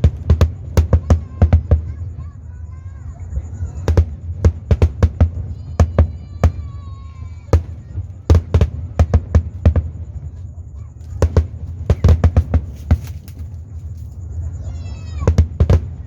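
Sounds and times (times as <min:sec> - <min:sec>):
fireworks shells bursting: 0:03.8 - 0:14.4.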